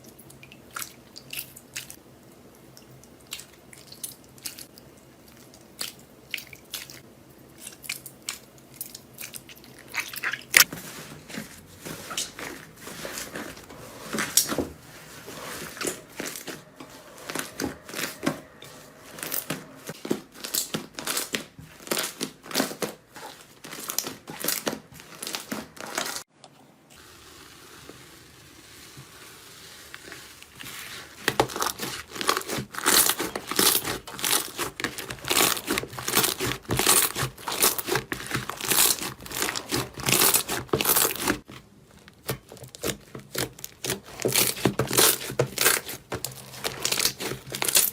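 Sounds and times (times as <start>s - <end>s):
slime crackling and popping: 31.6s - 41.4s.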